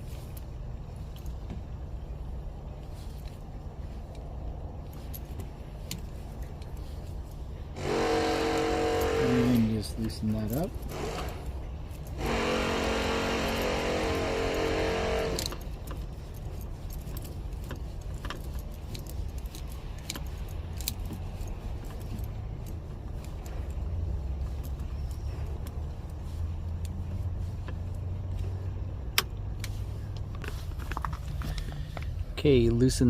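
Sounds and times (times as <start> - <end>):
loud droning tone: 7.8 - 10.0, 10.6 - 15.6
torx driver metallic clicks: 7.8 - 23.6.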